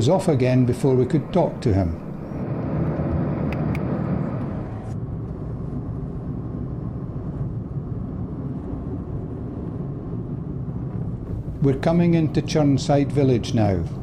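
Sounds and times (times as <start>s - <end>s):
car engine and tyre rumble: 0.0s - 14.0s.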